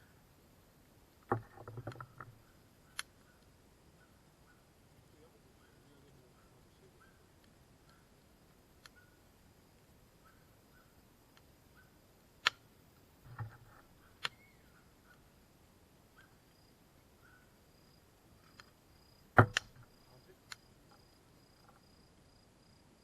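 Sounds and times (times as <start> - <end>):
wood fire crackling: 2.4 - 16.1.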